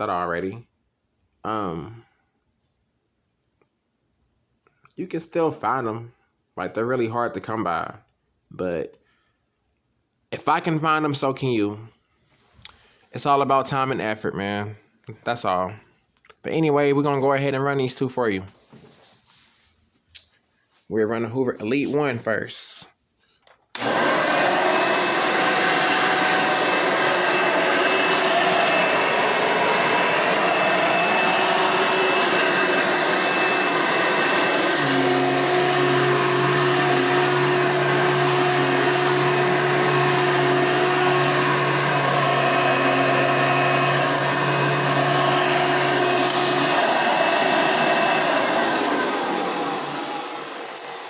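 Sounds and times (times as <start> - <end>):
vacuum cleaner running: 23.8 - 51.0.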